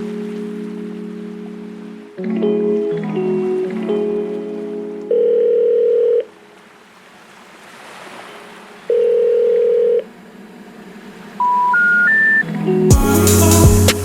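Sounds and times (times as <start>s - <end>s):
telephone ringback beep: 5.1s - 6.3s, 8.9s - 10.0s, 11.4s - 12.4s
rising three-tone signal: 11.4s - 13.8s.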